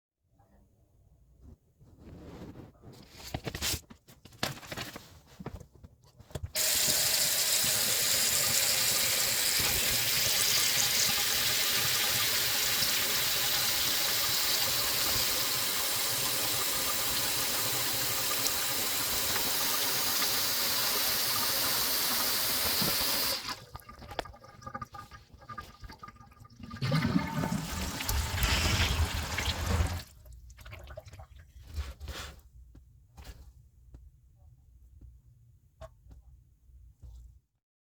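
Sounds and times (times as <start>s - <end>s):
toilet flushing: 6.6s - 30.2s.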